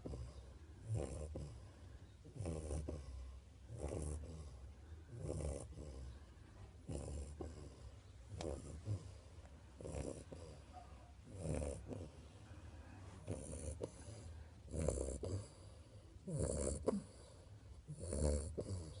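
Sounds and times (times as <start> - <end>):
person snoring: 9.8 - 10.6, 11.3 - 12.2, 13.2 - 17.2, 17.9 - 19.0.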